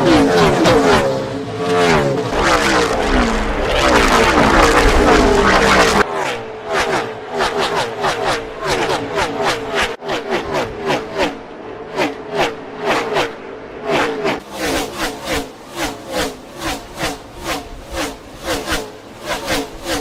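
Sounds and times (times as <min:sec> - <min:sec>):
rapidly pulsing engine note: 0:00.0 - 0:06.0, 0:14.4 - 0:20.0
race car engines passing by: 0:00.0 - 0:20.0.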